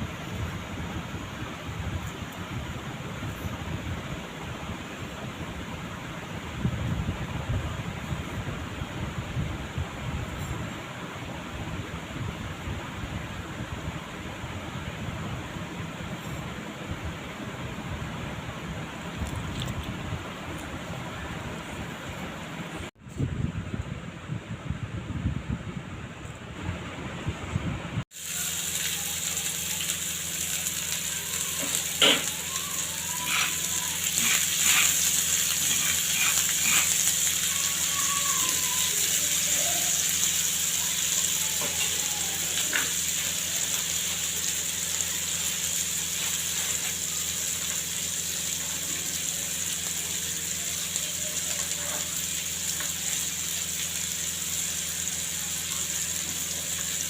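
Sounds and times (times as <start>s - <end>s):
food sizzling in hot oil: 28.1s - 57.0s.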